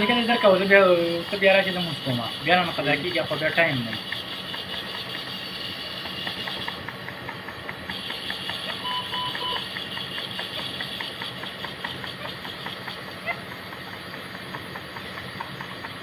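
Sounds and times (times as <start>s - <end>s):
hiss of air flow: 0.0s - 16.0s
low equipment hum: 0.0s - 16.0s
higher beeps: 8.8s - 9.6s
short monitor beeps: 8.8s - 9.7s.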